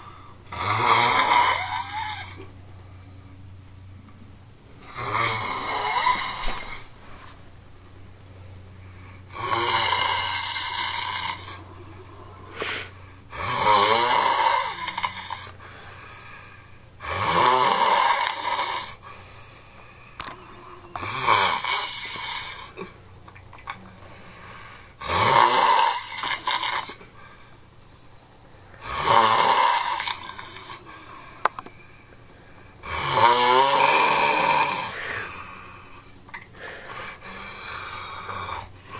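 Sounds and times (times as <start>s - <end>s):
quiet breathing: 0.0s - 0.6s, 4.7s - 13.6s, 14.4s - 17.0s, 18.4s - 23.2s, 23.8s - 25.0s, 26.0s - 29.0s, 29.9s - 33.0s, 34.5s - 38.9s
person snoring loudly: 0.0s - 2.5s, 4.8s - 6.9s, 9.0s - 19.4s, 20.1s - 23.0s, 24.1s - 27.0s, 28.8s - 31.4s, 32.8s - 38.9s.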